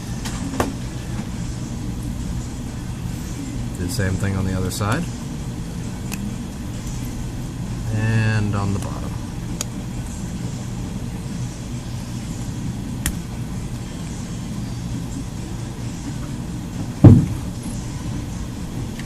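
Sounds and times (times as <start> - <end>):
loud thump: 17.0 - 17.4.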